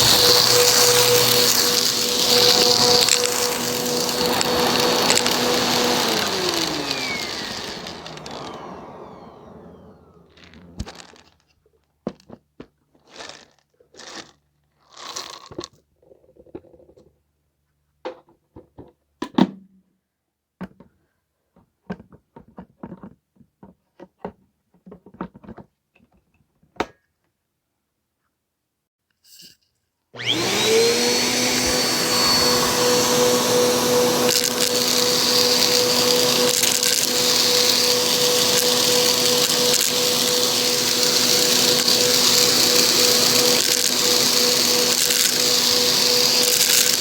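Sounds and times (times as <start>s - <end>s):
vacuum motor spinning down: 0.0s - 11.3s, 30.2s - 47.0s.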